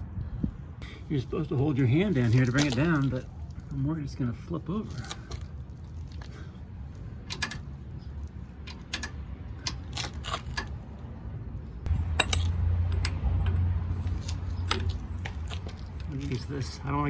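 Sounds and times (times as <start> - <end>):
metallic clicks of steel parts: 6.9 - 10.8, 11.8 - 16.4.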